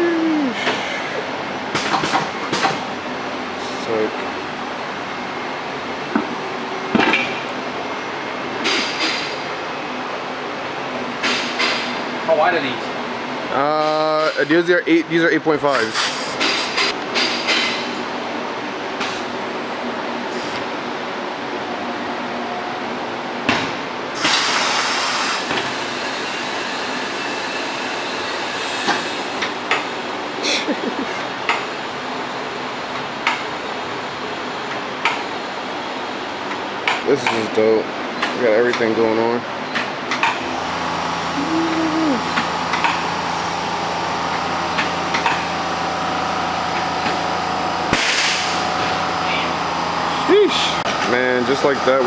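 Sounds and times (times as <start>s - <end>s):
compressed air hissing: 15.7s - 16.9s, 24.2s - 29.6s
machine hum: 40.4s - 52.0s.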